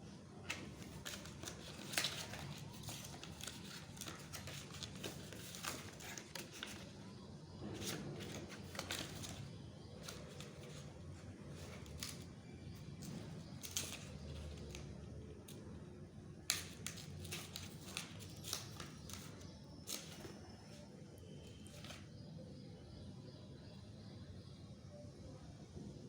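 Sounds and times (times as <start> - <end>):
paper packaging rustling: 0.4 - 15.0, 16.5 - 22.1.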